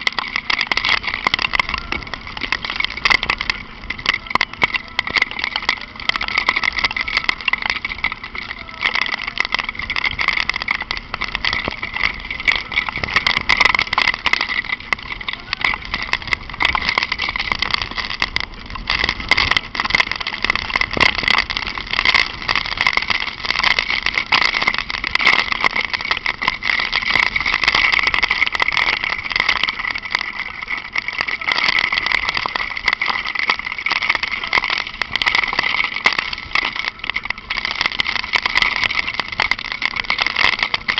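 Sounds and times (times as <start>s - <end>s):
motorcycle riding noise: 0.0s - 40.9s
rain patter: 0.0s - 40.9s.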